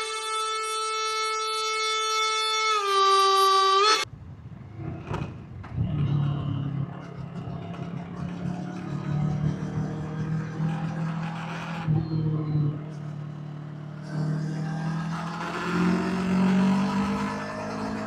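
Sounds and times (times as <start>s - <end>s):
motorcycle engine running: 5.0s - 18.0s.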